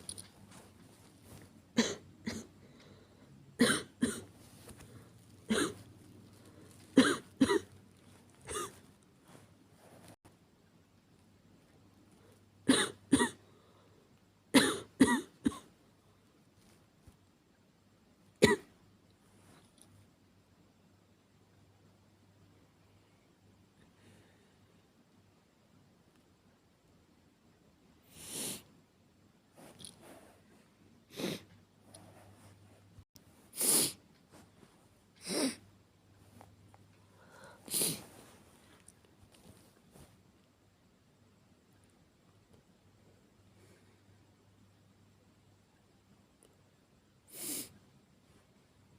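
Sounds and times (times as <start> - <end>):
woman coughing: 1.8 - 2.5, 3.6 - 4.3, 5.5 - 5.8, 7.0 - 7.7, 8.5 - 8.8, 12.7 - 13.4, 14.6 - 15.7, 18.4 - 18.7.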